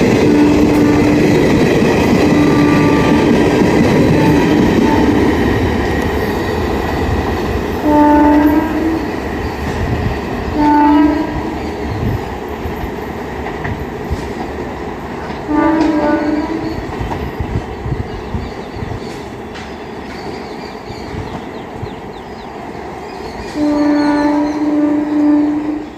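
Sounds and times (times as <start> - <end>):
train rumble and wheel clatter: 0.0 - 25.9
locomotive horn blasts: 0.2 - 1.4, 2.3 - 3.4, 4.1 - 5.3, 7.8 - 9.1, 10.6 - 11.6, 15.5 - 16.7, 23.6 - 25.9.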